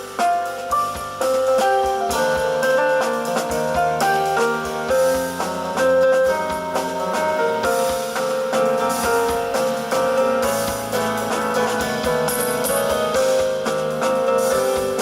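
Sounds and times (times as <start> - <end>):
bass: 0.0 - 15.0
drums: 0.0 - 15.0
jazz piano chords: 0.0 - 15.0.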